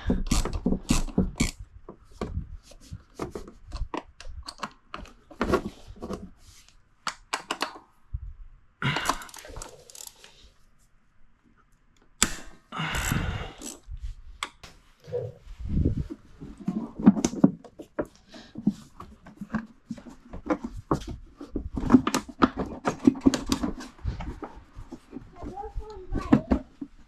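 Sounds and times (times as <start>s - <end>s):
hand tools clicking on metal: 8.9s - 10.3s, 12.2s - 13.8s
scraping rattling noises: 14.7s - 27.0s.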